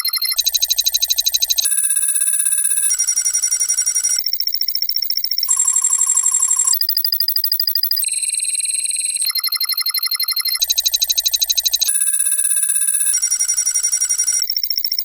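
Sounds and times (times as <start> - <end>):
rapid trilling electronic beeps: 5.2 - 15.0.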